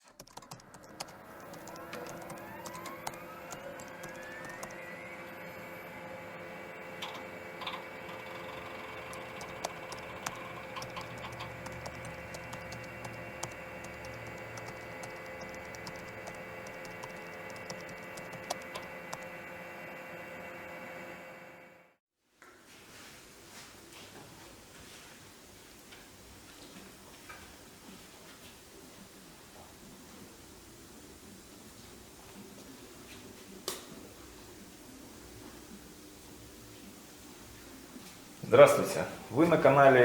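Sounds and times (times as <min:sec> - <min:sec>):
machine whine spinning up: 0:00.3 - 0:22.0
sharp ticks: 0:08.3 - 0:19.3.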